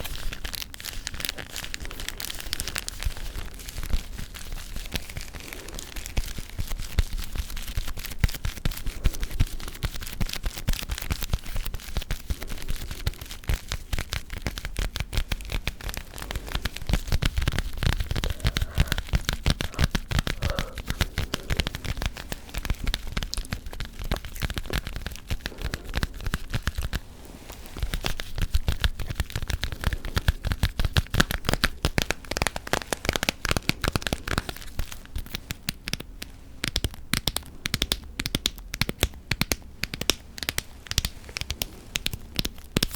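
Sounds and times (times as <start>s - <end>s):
gum chewing: 15.1s - 26.9s.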